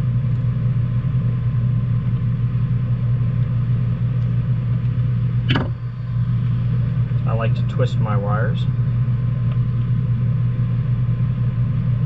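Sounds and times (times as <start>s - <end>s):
machine humming: 0.0s - 12.0s.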